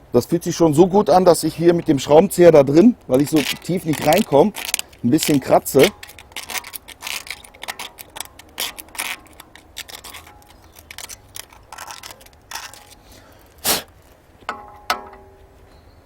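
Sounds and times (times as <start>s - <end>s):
screwdriver scraping metal: 3.0s - 13.0s
metal knock: 14.5s - 15.3s.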